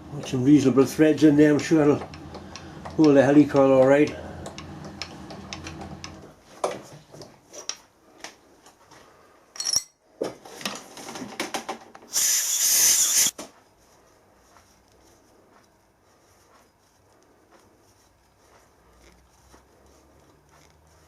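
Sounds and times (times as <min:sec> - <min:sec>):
metal tools clicking and knocking: 0:09.6 - 0:10.0
loud hiss: 0:12.1 - 0:13.3.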